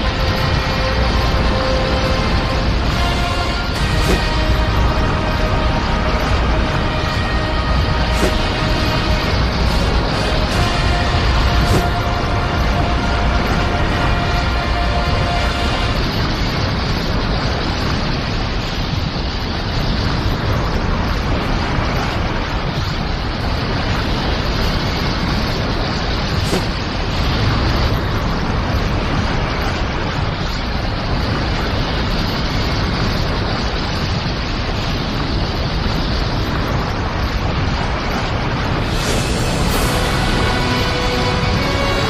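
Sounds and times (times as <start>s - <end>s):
loud rushing roar: 0.0s - 42.0s.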